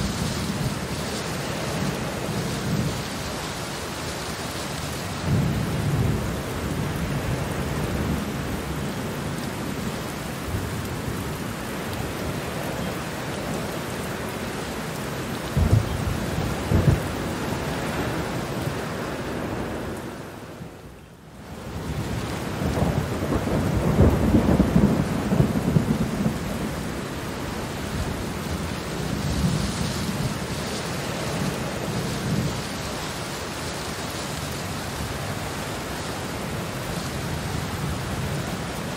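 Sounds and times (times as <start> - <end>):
steady rain: 0.0 - 38.9
sharp thunderclaps: 15.6 - 17.2
thunder rolling: 15.6 - 18.3, 21.9 - 27.0.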